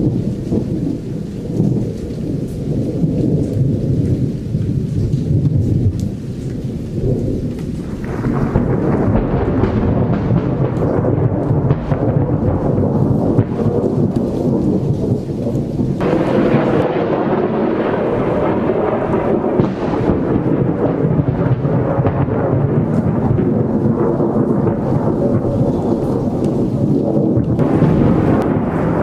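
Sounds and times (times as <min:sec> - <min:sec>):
rain falling: 0:00.0 - 0:29.0
rolling thunder: 0:00.0 - 0:29.0.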